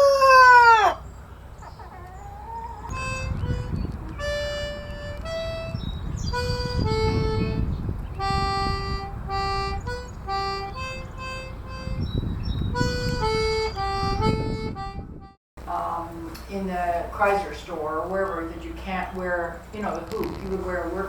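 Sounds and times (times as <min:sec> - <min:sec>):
reedy harmonica-like melody: 0:02.9 - 0:15.4.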